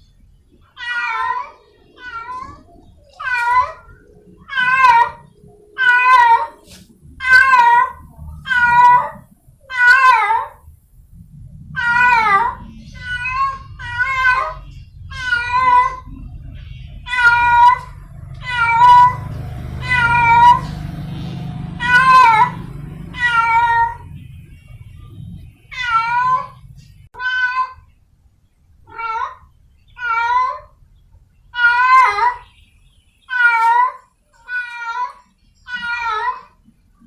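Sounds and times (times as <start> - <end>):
low background rumble: 0.0 - 27.2
cat yowling: 0.8 - 10.6, 11.8 - 16.3, 17.0 - 24.2, 25.6 - 27.9, 28.9 - 30.8, 31.6 - 32.4, 33.3 - 36.6.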